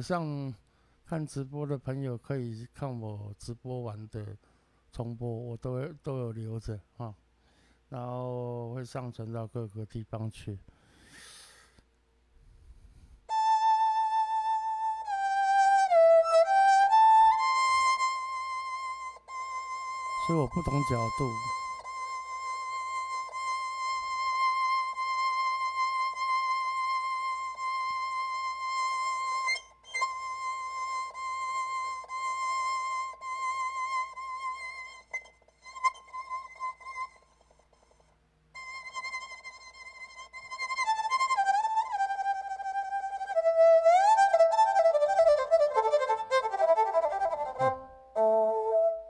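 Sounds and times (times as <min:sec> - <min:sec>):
keyboard imitating erhu: 0:13.3 - 0:37.7, 0:38.6 - 0:49.0.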